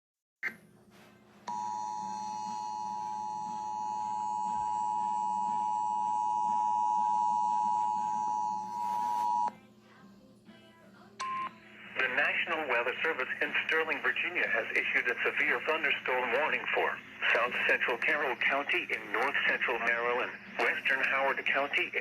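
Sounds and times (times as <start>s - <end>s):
two-tone alarm: 1.5s - 9.5s.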